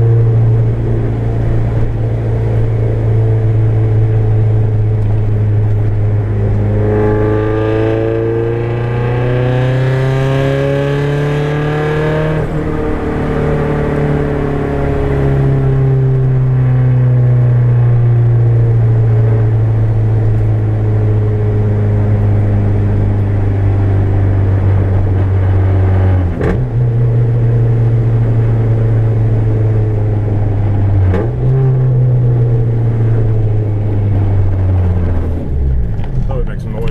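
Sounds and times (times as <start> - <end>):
turbocharged engine revving: 3.6 - 16.5.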